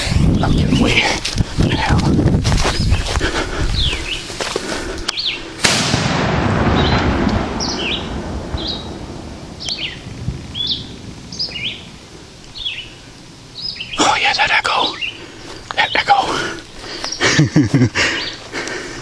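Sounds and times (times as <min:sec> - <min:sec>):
birds chirping: 0:00.0 - 0:05.6, 0:06.6 - 0:19.0
firecracker bang with echo: 0:05.6 - 0:09.1.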